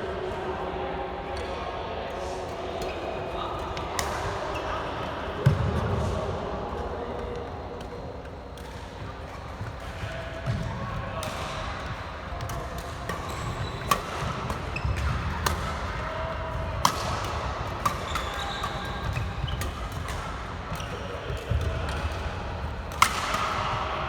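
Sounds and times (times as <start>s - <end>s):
racket striking shuttlecock: 12.4s - 21.0s, 22.9s - 23.8s
shoes squeaking on court floor: 13.1s - 15.5s, 17.8s - 21.6s.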